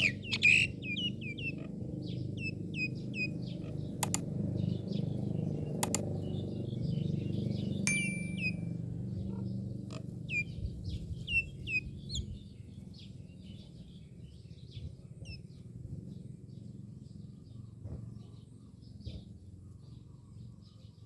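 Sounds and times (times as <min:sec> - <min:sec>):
myna birds whistling calls: 0:00.0 - 0:08.8, 0:10.2 - 0:13.7
bird chirps: 0:00.0 - 0:15.7.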